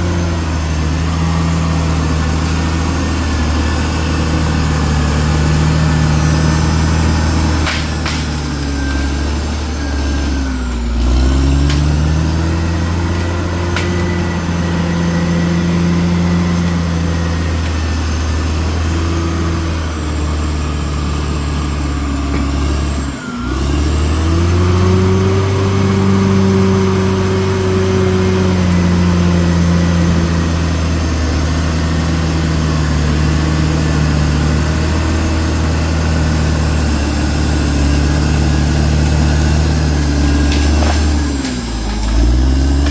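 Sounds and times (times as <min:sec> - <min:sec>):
bulldozer diesel engine running: 0:00.0 - 0:42.9.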